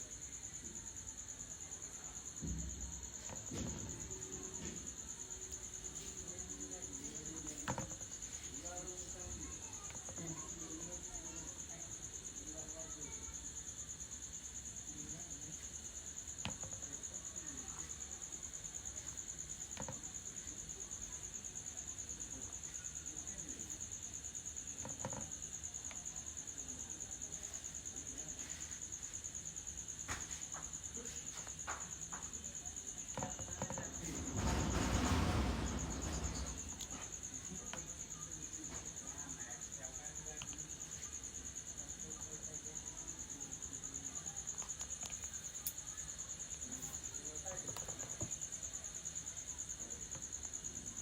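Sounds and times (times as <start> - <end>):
high-pitched insect trill: 0.0 - 51.0
rustling burst: 34.0 - 37.0.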